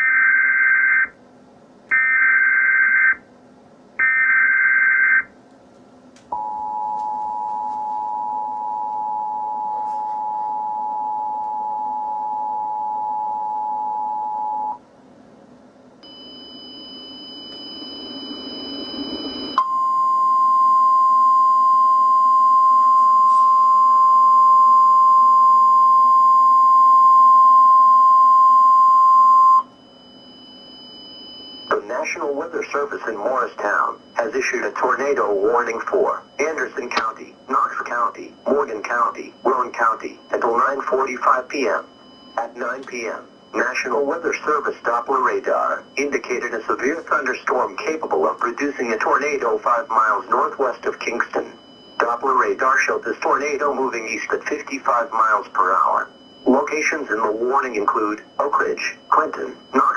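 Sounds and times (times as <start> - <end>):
steady alarm tone: 0.0 - 1.2, 1.9 - 3.3, 4.0 - 5.3, 6.3 - 14.8, 16.0 - 59.9
two-tone attention signal: 16.0 - 31.8
digital data tone bursts: 31.7 - 59.9.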